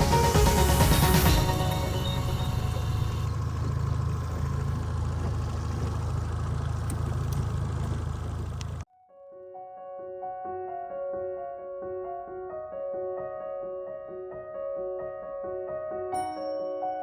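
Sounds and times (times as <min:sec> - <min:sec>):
soft piano music: 0:00.0 - 0:03.3, 0:08.9 - 0:17.0
outboard motor running: 0:00.4 - 0:08.8.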